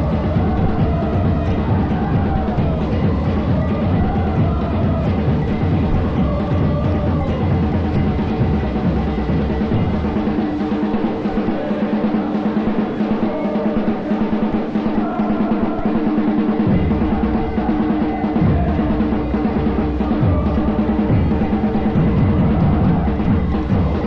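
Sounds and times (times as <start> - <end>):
deep bass drum: 0.0 - 10.4, 16.6 - 24.0
drums beating fast rhythm: 0.0 - 24.0
music: 0.0 - 24.0.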